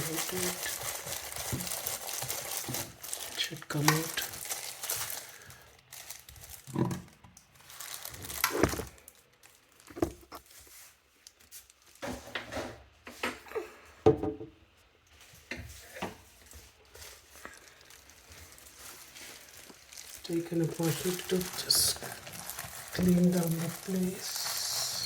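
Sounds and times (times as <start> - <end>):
drain parts scraping and rattling: 17.4 - 25.0.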